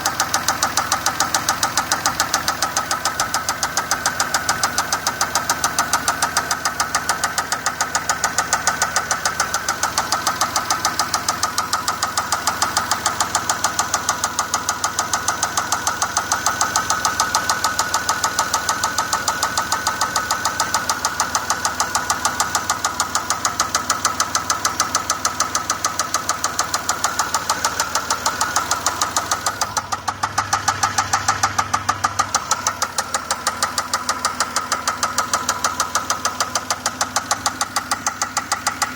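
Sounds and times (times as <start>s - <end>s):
car engine running: 0.0s - 38.9s
rapid engine knock: 0.0s - 38.9s.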